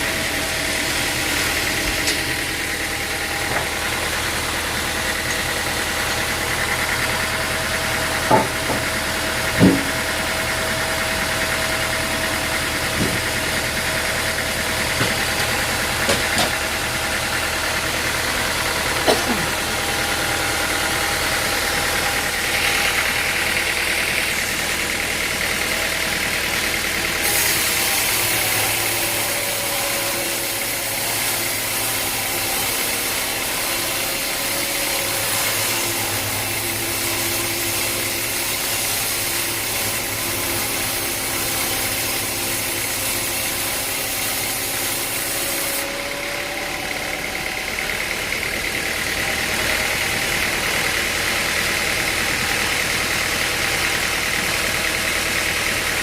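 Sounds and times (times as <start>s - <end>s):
machinery running: 0.0s - 56.0s
sharp knocks: 8.3s - 8.9s, 9.6s - 10.1s.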